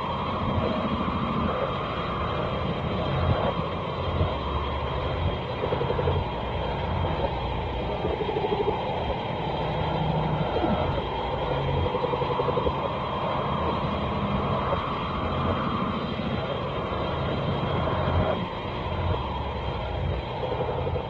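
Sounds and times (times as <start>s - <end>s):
low rumbling drone: 0.0s - 21.0s.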